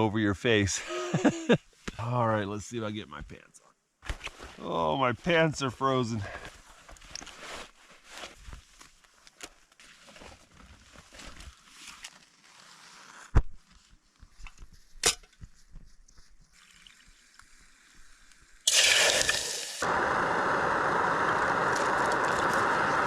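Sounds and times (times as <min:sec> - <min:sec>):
clothing rustling: 0:06.5 - 0:16.6
camp stove burner hissing: 0:18.6 - 0:23.0.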